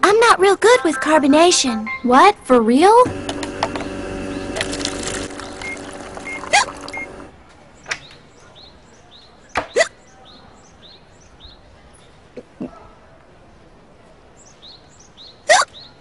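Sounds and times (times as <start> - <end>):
girl hiccuping: 15.5 - 15.7.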